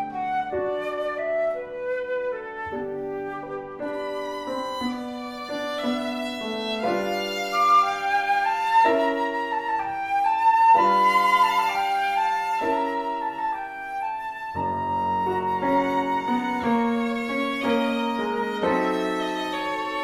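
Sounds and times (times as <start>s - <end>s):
instrumental trio playing slow melody: 14.2s - 20.0s.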